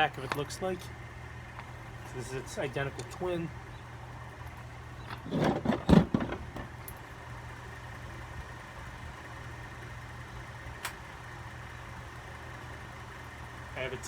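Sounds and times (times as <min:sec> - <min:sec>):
fan motors humming: 0:00.0 - 0:14.0
loud knocks: 0:05.3 - 0:06.8.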